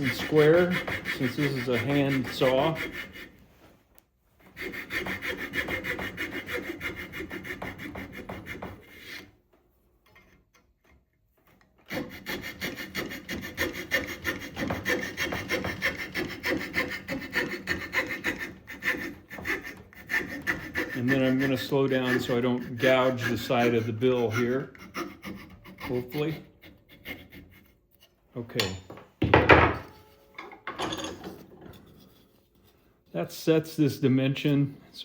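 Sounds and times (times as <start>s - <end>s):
hand saw cutting wood: 0.0s - 3.4s, 4.5s - 9.4s, 11.8s - 28.2s.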